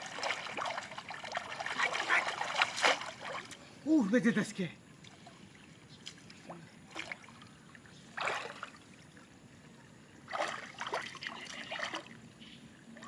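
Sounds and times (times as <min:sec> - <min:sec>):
water splashing and trickling: 0:00.0 - 0:13.0.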